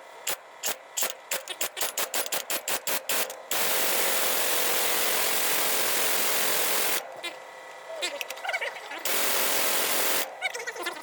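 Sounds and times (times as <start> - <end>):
loud steady hiss: 2.8 - 7.0, 9.0 - 10.3.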